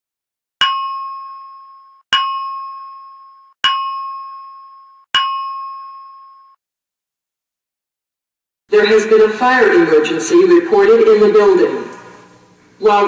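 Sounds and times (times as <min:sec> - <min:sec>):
bell-like chime alert tone: 0:00.6 - 0:06.6.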